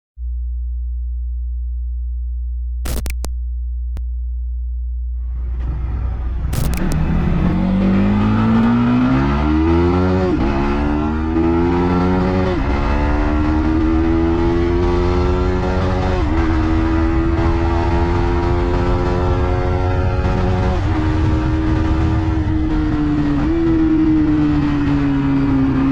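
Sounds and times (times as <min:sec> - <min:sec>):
motorcycle engine accelerating: 0:05.2 - 0:25.9.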